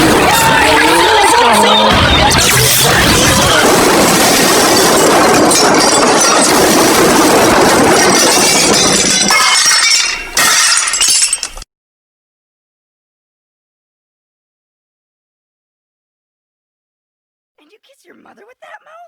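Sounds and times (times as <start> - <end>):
debris clattering: 0.0 - 11.7
glass shattering: 1.8 - 11.7.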